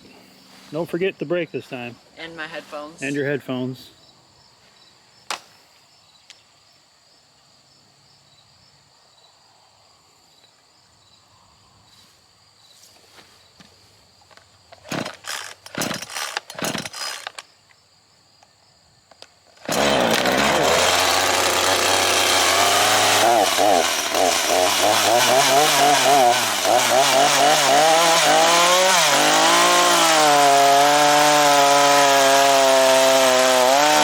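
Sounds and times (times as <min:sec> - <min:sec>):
crickets chirring: 0:00.1 - 0:19.7
chainsaw recoil starter pulls: 0:14.7 - 0:17.4, 0:19.6 - 0:34.0.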